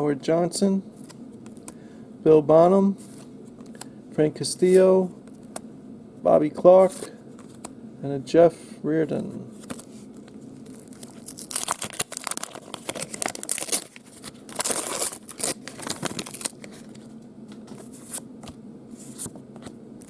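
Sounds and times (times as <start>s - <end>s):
card pack wrapper tearing: 10.7s - 17.0s.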